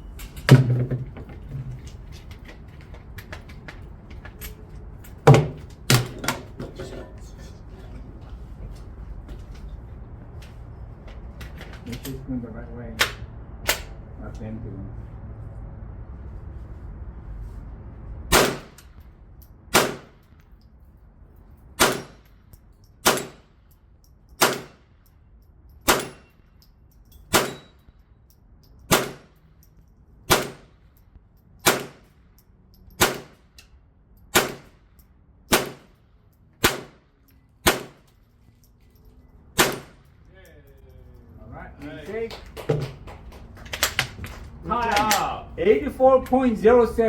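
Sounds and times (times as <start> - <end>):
rifle gunshots: 18.3 - 18.8, 19.7 - 20.2, 21.8 - 22.2, 23.0 - 23.4, 24.4 - 24.8, 28.9 - 29.3, 30.3 - 30.7, 31.6 - 32.0, 33.0 - 33.4, 34.3 - 34.8, 35.5 - 35.9, 36.6 - 37.0, 37.6 - 38.0, 39.6 - 40.0
bullets ringing on steel targets: 25.8 - 27.9.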